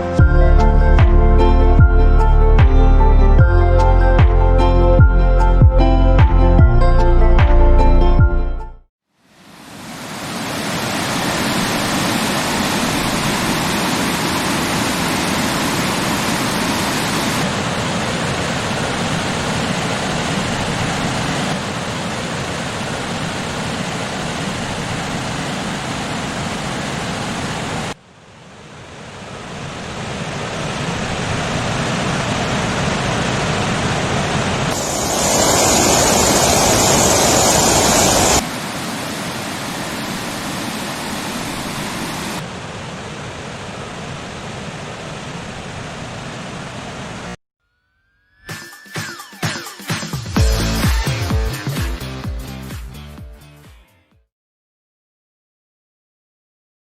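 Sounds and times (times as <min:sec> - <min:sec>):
waterfall water rushing: 0:09.2 - 0:28.0, 0:28.6 - 0:47.4.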